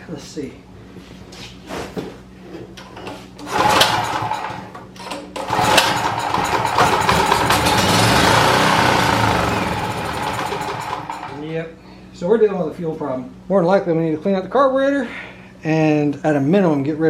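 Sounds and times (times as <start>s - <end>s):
small generator engine starting: 3.4s - 11.5s.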